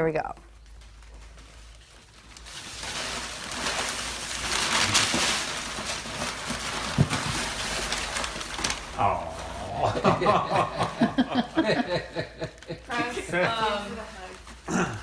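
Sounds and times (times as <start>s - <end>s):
paper rustling and crinkling: 0.4s - 14.7s.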